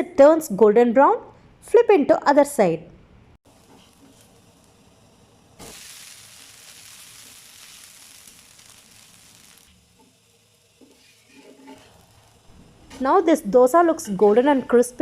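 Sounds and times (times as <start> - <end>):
dosa sizzling in oil: 3.4 - 15.0.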